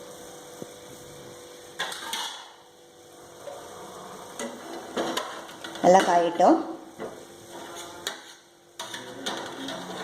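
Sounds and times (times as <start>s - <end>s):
metal pan clattering: 8.0s - 10.0s.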